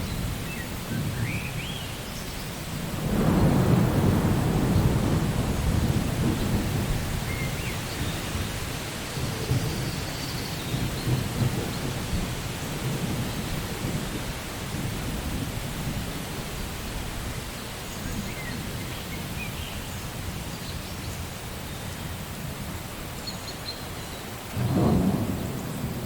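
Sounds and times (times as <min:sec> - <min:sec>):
steady rain: 0:00.0 - 0:26.0
thunder rumbling: 0:02.7 - 0:16.8, 0:24.4 - 0:26.0
loud thunder crack: 0:03.0 - 0:08.6, 0:24.6 - 0:26.0.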